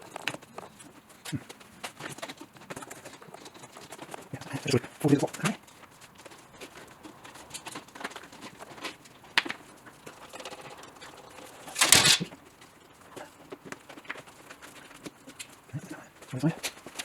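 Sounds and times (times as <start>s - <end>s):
scraping knock: 10.1s - 12.3s.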